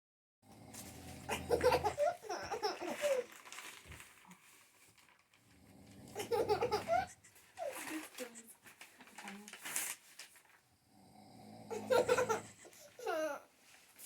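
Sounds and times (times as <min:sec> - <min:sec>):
young child laughing: 0:01.3 - 0:03.3.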